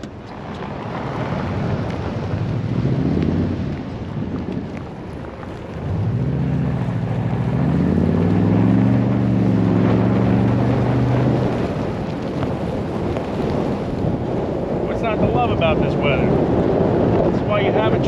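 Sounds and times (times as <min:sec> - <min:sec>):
engine accelerating: 0:00.0 - 0:12.4
wind noise on microphone: 0:00.0 - 0:18.0.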